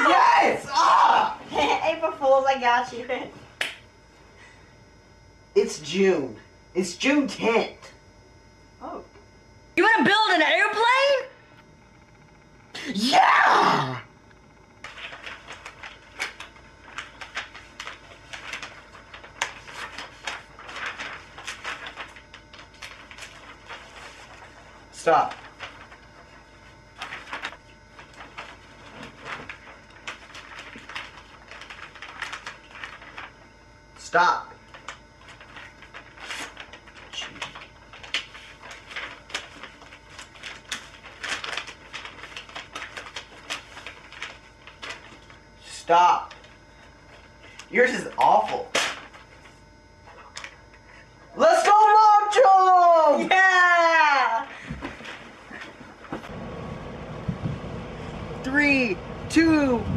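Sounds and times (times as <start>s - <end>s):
paper rustling and crinkling: 14.8s - 33.8s, 34.6s - 45.6s, 46.2s - 50.9s, 51.6s - 56.4s.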